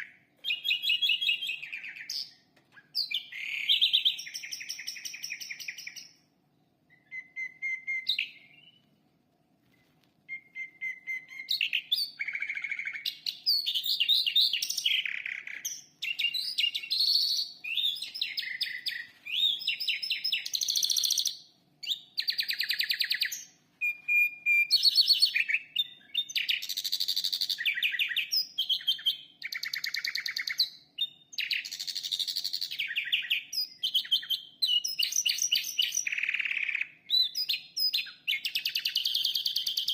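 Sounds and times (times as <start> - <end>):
lark singing trills: 0.0 - 6.2, 6.9 - 8.8, 10.3 - 39.9.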